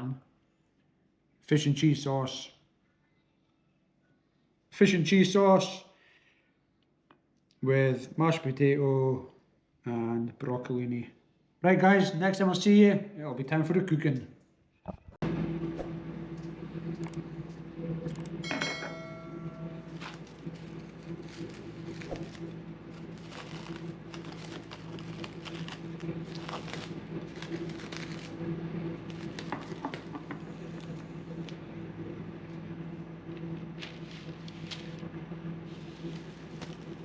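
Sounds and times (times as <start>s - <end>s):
steady electric hum: 15.2s - 37.0s
ringing clink: 18.4s - 20.0s.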